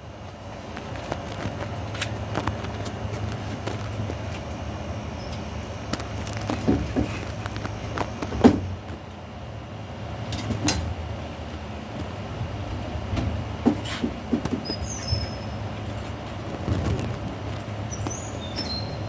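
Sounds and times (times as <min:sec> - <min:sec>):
steady low hum: 0:00.0 - 0:19.0
bird chirping: 0:14.6 - 0:15.6, 0:17.8 - 0:19.0.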